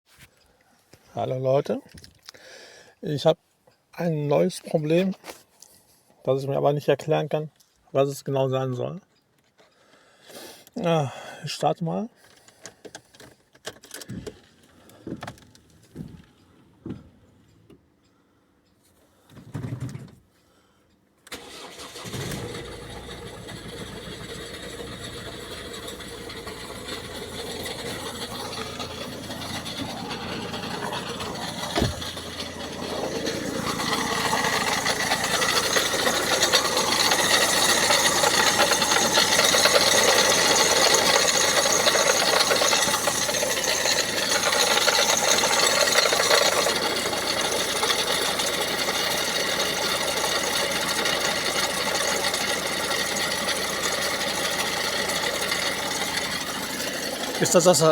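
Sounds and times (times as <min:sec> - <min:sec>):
diesel engine starting and idling: 0:21.3 - 0:57.9.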